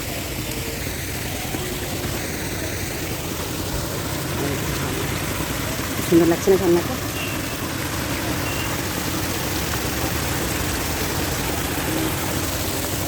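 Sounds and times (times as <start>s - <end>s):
fountain water splashing: 0.0s - 13.0s.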